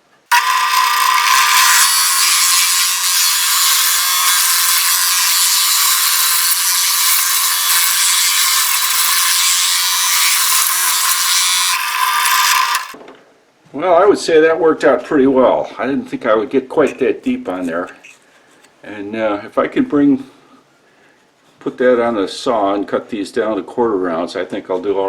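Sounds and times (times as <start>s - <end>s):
power drill boring through wood: 0.3s - 13.0s.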